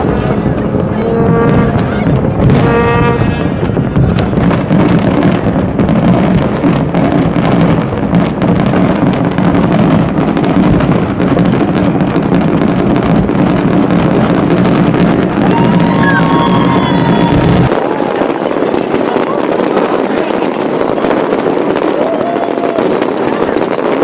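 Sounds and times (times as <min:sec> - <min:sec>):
fireworks bangs and crackles: 0:00.0 - 0:24.0
horn-like tone: 0:01.0 - 0:01.9, 0:02.5 - 0:03.3.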